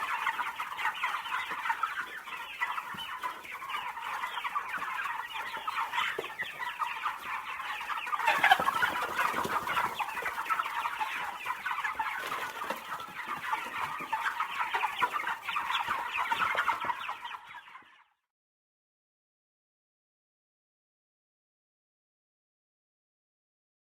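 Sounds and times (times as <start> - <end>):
chickens clucking: 0.0 - 18.2.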